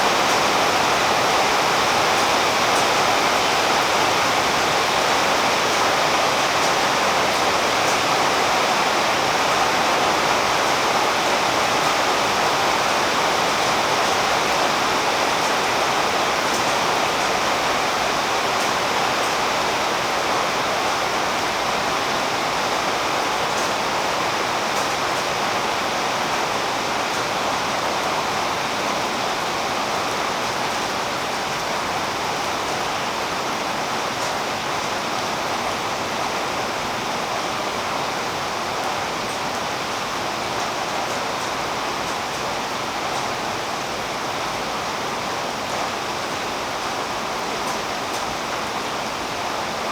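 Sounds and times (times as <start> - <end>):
rain on foliage: 0.0 - 49.9.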